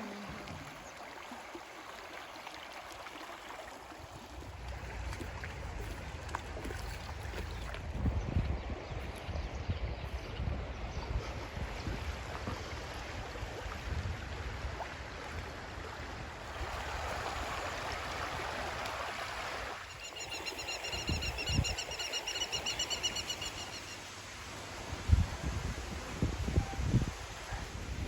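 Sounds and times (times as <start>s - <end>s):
wind buffeting microphone: 4.4s - 17.5s, 25.0s - 28.0s.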